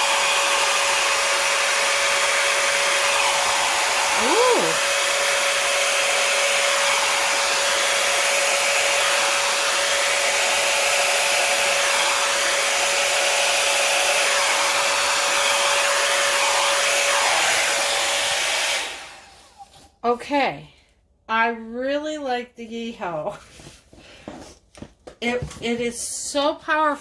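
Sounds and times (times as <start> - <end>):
blow dryer switch: 0.0 - 19.2
blow dryer running: 0.0 - 19.6.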